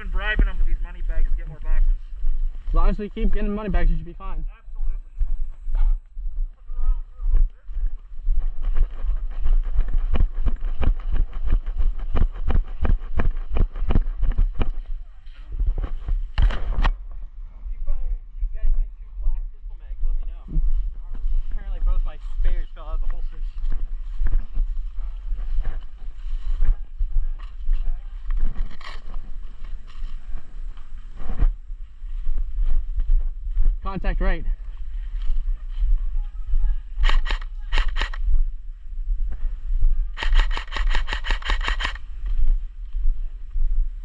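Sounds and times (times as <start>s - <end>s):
low rumble on microphone: 0.0s - 44.0s
footsteps jogging: 4.7s - 16.4s, 20.0s - 33.8s, 34.5s - 43.8s.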